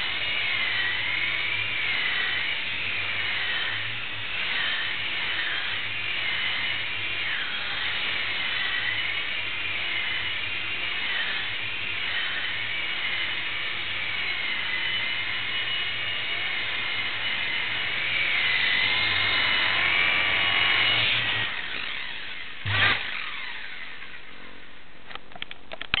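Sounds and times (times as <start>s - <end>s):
small electric motors whining: 0.0s - 26.0s
small clicks: 25.1s - 26.0s.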